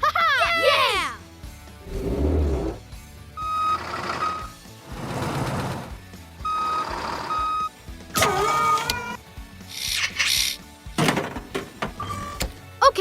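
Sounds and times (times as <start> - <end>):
background music: 0.0 - 13.0
vehicle reversing beeps: 3.4 - 4.6, 6.4 - 7.8.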